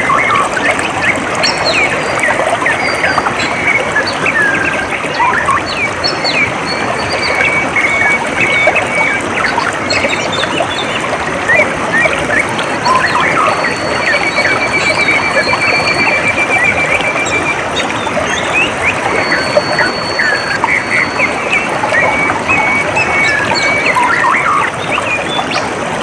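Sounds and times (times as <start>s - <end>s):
small birds chirping: 0.0s - 25.7s
water trickling: 0.0s - 26.0s
bird trill: 11.5s - 25.6s.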